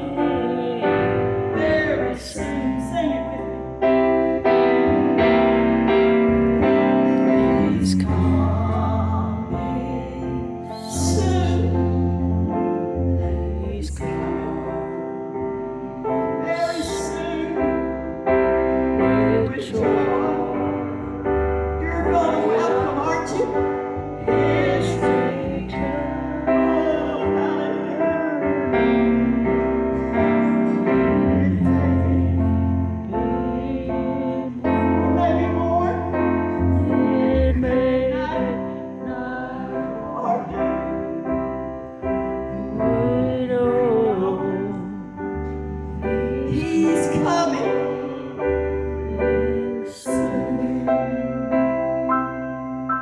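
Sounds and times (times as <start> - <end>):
gospel singing with vibrato: 0.0 - 53.0
low bass notes: 0.0 - 53.0
piano accompaniment: 0.0 - 53.0.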